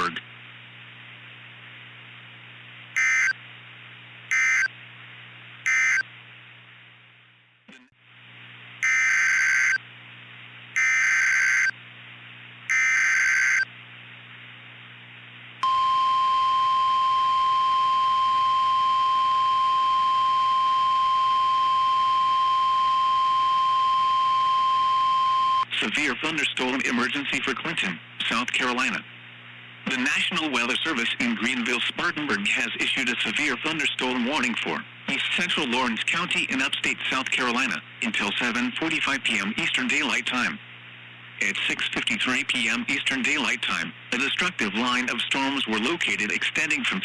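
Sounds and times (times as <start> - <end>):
low steady hum: 0.0 - 9.0, 9.8 - 11.0, 11.7 - 12.8, 13.6 - 47.0
digital data bursts: 3.0 - 3.4, 4.3 - 4.7, 5.7 - 6.0, 12.7 - 13.7
steady warning tone: 3.0 - 3.4, 4.3 - 4.7, 5.7 - 6.1, 8.8 - 9.8, 10.8 - 11.8, 12.7 - 13.7, 15.6 - 25.7.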